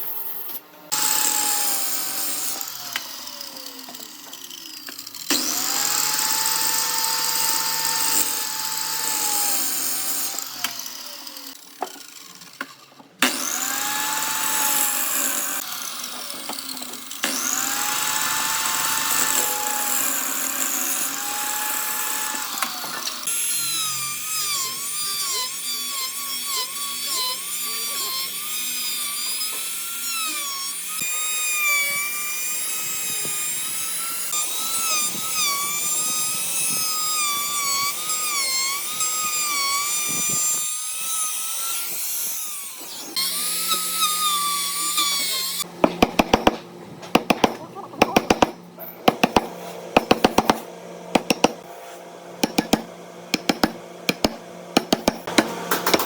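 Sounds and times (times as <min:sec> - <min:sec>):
power tool motor whine: 0:00.9 - 0:12.5, 0:13.2 - 0:28.0.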